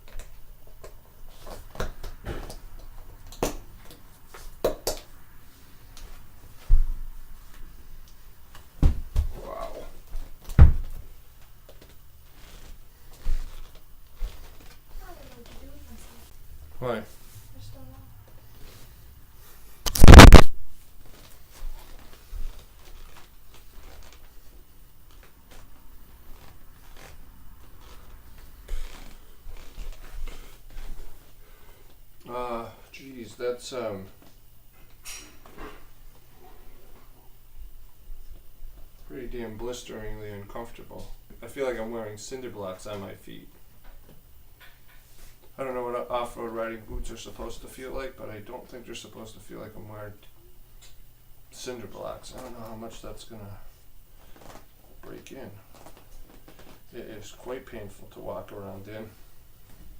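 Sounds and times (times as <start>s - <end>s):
faint rustling of boots: 5.5s - 20.1s, 20.7s - 32.0s, 54.0s - 59.9s.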